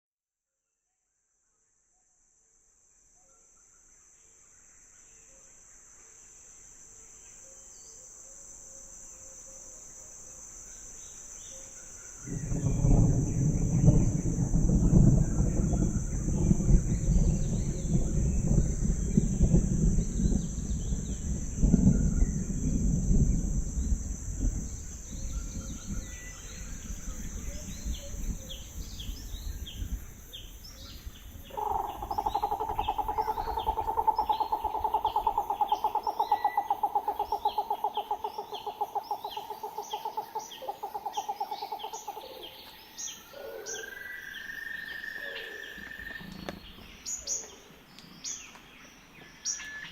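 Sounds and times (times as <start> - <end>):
insect drone: 3.5 - 49.9
bird chirps: 31.5 - 48.6.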